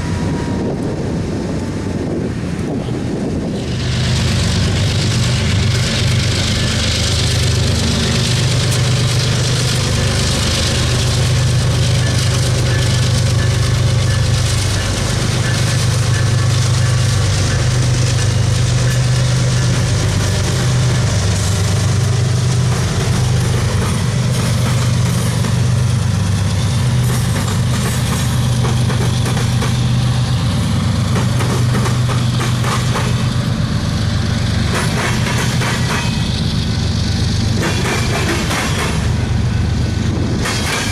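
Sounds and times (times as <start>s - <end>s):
diesel locomotive engine drone: 0.0s - 40.9s.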